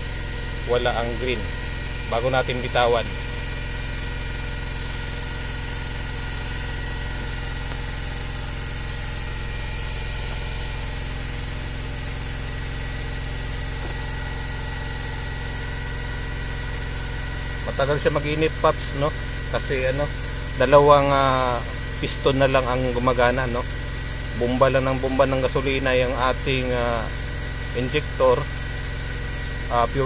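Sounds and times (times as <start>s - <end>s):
misfiring car engine running: 0.0s - 30.0s.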